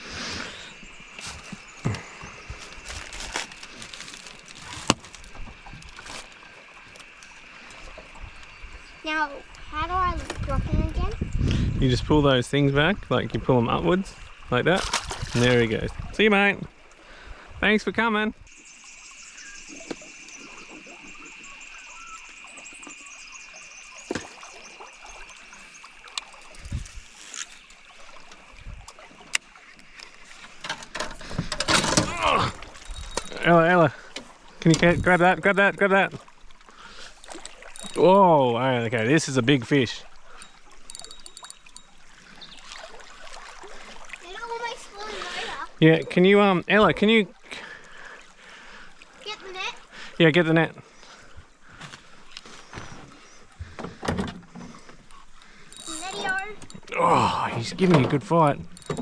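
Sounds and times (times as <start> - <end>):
gear knocking in metal boat: 58.0 - 59.0.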